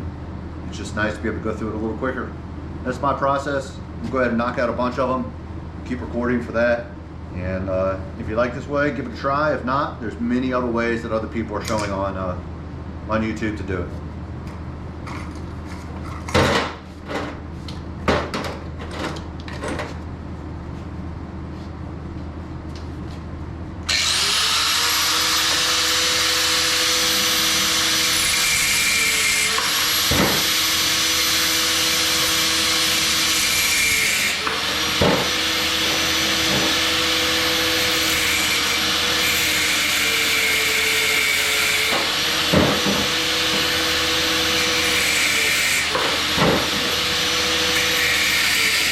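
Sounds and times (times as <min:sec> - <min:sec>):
power cutting tool running: 0:23.9 - 0:48.9.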